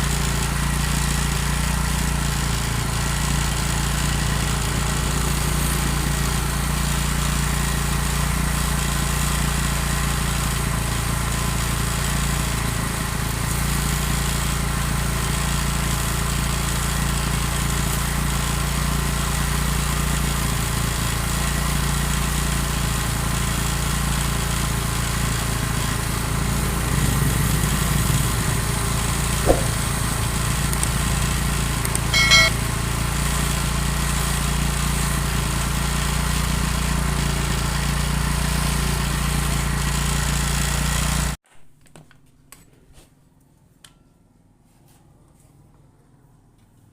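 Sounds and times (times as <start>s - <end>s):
motorcycle engine running: 0.0s - 41.4s
sharp click: 29.5s - 29.8s
brief high squeak: 32.1s - 32.6s.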